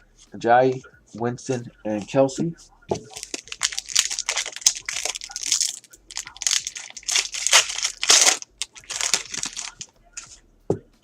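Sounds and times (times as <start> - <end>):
plastic wrapper tearing and crinkling: 3.1 - 9.9.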